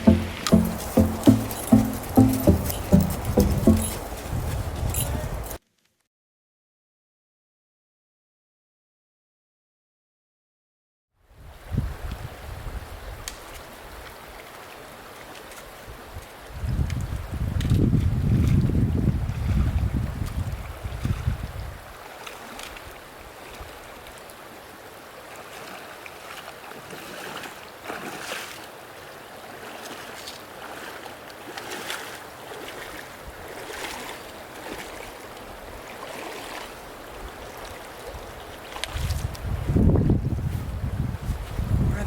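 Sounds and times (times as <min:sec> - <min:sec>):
wind buffeting microphone: 0:16.5 - 0:21.8, 0:39.0 - 0:42.0.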